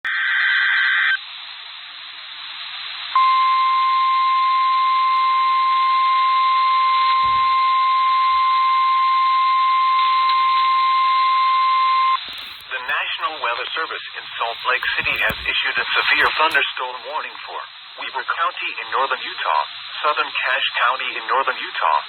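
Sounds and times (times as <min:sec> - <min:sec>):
radio static hiss: 0:00.1 - 0:03.2, 0:12.2 - 0:22.0
steady warning alarm tone: 0:03.2 - 0:16.6.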